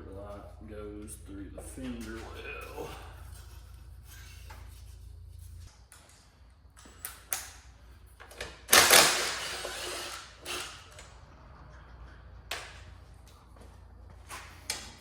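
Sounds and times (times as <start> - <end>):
scraping rattle: 1.8 - 5.7.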